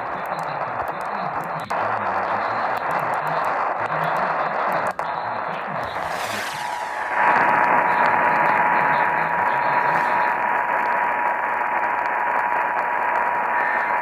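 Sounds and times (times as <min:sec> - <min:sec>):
radio static hiss: 0:00.0 - 0:14.0
steady alert tone: 0:05.8 - 0:07.8.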